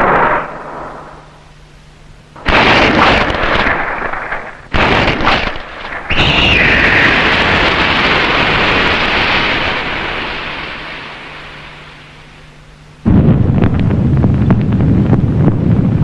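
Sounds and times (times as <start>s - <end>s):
big explosion: 0.0s - 1.5s, 2.4s - 11.8s, 13.1s - 16.0s
short blasts: 0.0s - 15.6s
falling whistle: 6.0s - 7.3s.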